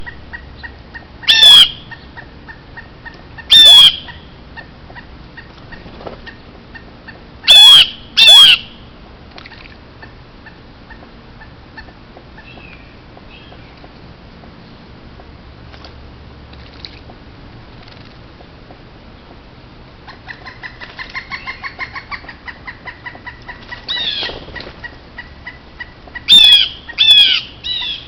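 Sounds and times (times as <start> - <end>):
woodpecker calling: 0.0 - 8.9, 9.5 - 14.0, 20.0 - 28.0.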